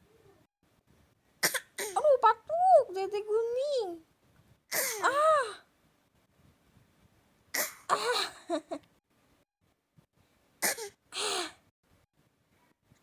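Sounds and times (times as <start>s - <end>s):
child coughing: 1.4s - 2.0s, 4.8s - 5.2s.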